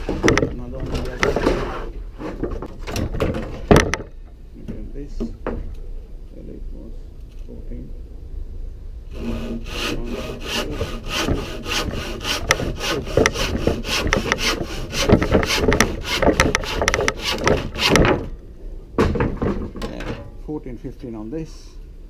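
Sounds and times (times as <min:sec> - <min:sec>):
hand saw rasping through wood: 0:09.1 - 0:18.3.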